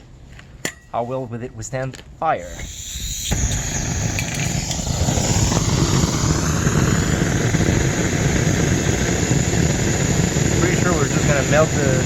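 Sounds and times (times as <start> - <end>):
gas torch ignition click: 2.4 - 12.0
torch flame rushing: 2.4 - 12.0.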